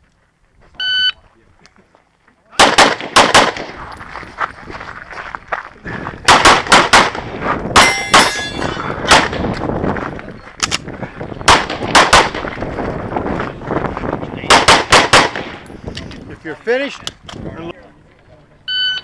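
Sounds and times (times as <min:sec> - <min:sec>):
pistol shots: 0:02.6 - 0:03.8, 0:06.3 - 0:09.4, 0:11.4 - 0:12.5, 0:14.5 - 0:15.7
metallic ringing clang: 0:07.8 - 0:08.8.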